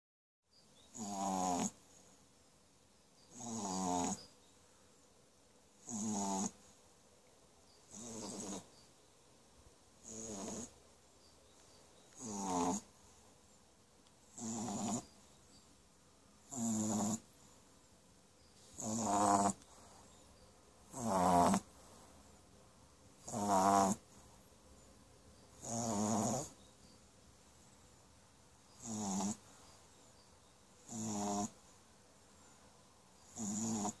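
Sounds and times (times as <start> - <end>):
puppy snoring: 0.8 - 1.9, 3.3 - 4.3, 5.8 - 6.7, 7.8 - 8.7, 10.0 - 10.8, 12.1 - 13.0, 14.2 - 15.3, 16.4 - 17.3, 18.6 - 20.2, 20.8 - 22.0, 23.2 - 24.2, 25.5 - 26.6, 28.8 - 29.6, 30.8 - 31.7, 33.2 - 34.0.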